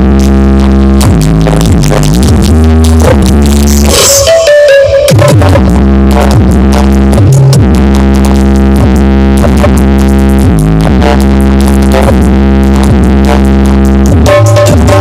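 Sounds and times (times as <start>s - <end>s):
electronic dance music: 0.0s - 15.0s.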